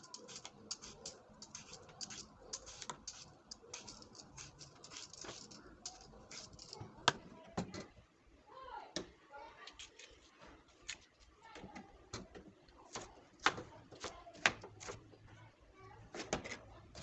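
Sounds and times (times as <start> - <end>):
faint crisp clicks and crackles: 0.0 - 8.0.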